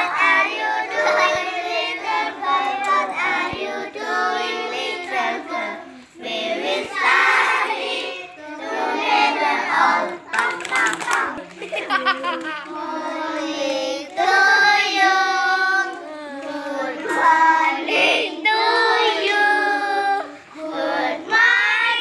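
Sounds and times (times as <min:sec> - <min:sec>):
children singing together: 0:00.0 - 0:22.0.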